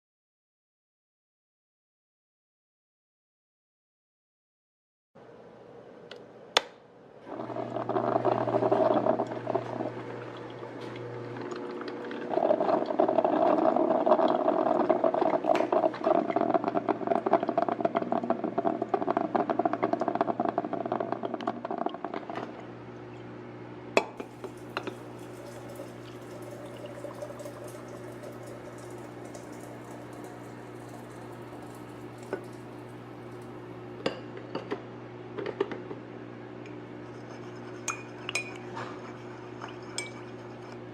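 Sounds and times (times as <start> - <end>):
steady low hum: 5.2 - 40.9
water pouring: 7.3 - 22.7, 24.2 - 33.8.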